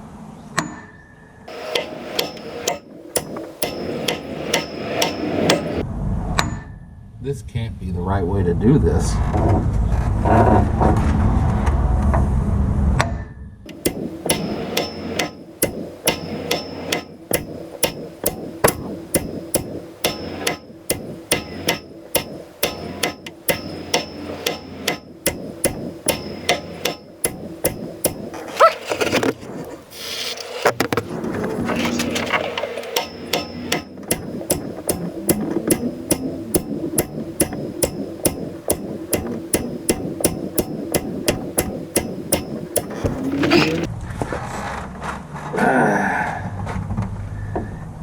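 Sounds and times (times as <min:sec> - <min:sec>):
hammer blows with metallic ring: 0:00.6 - 0:05.8, 0:06.4 - 0:07.0, 0:13.1 - 0:29.2, 0:31.6 - 0:43.9.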